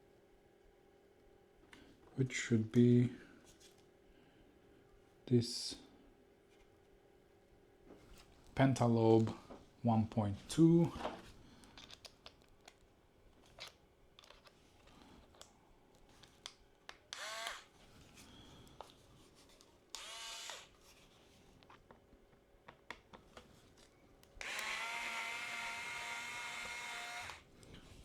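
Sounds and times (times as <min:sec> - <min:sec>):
electric screwdriver whirring: 0:17.1 - 0:17.7, 0:19.9 - 0:20.7, 0:24.4 - 0:27.5.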